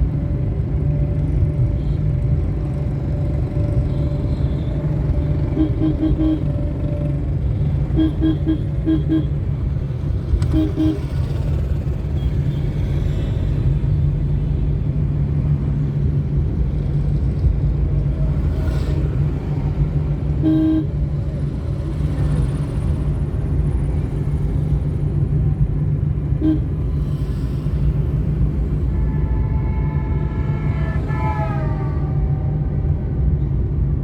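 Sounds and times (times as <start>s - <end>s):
road traffic rumble: 0.0s - 34.0s
car horn toot: 5.5s - 6.6s, 7.9s - 9.4s, 10.4s - 11.2s, 20.4s - 20.9s, 26.4s - 26.7s.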